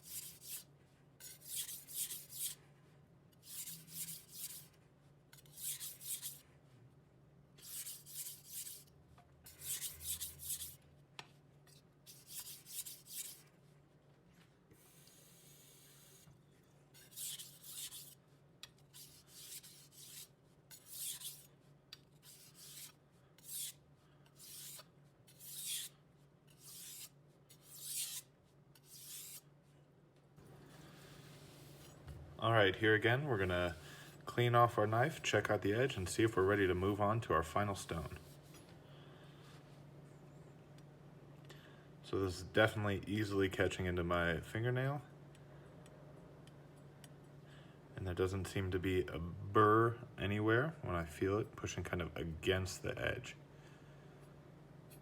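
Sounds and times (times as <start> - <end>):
knife scraping on whetstone: 0.0 - 0.6, 1.2 - 2.6, 3.4 - 4.7, 5.3 - 6.4, 7.6 - 8.9, 9.5 - 10.8, 11.7 - 13.4, 16.9 - 18.2, 18.8 - 21.5, 22.2 - 25.9, 26.5 - 29.4.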